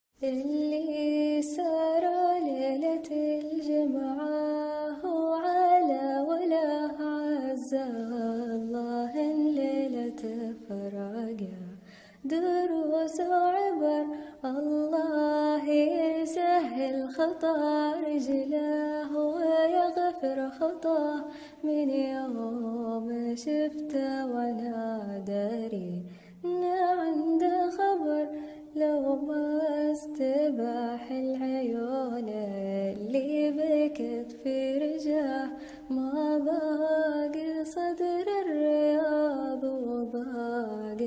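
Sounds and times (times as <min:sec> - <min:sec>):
singer breaths: 0:11.8 - 0:12.2, 0:14.1 - 0:14.4, 0:21.3 - 0:21.6, 0:26.0 - 0:26.4, 0:35.6 - 0:35.9.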